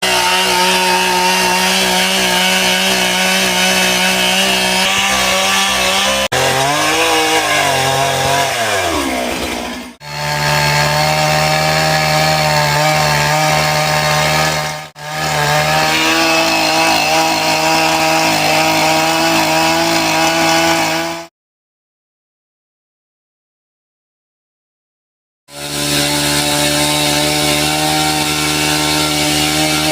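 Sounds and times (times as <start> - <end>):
chainsaw cutting tree: 0.0 - 21.3, 25.5 - 29.9.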